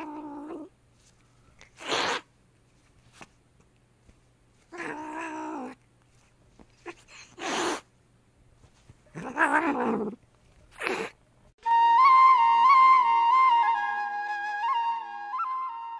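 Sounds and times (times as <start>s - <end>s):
cat-like meowing calls: 4.7s - 5.8s, 9.1s - 10.2s.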